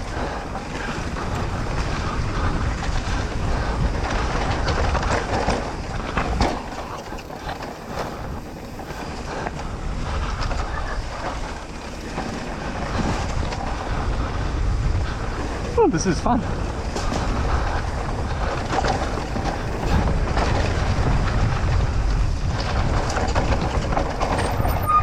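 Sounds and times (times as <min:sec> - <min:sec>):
bike tyre noise on dirt: 0:00.0 - 0:25.0
wind rumbling on microphone: 0:00.0 - 0:25.0
chain and frame rattling: 0:24.0 - 0:25.0.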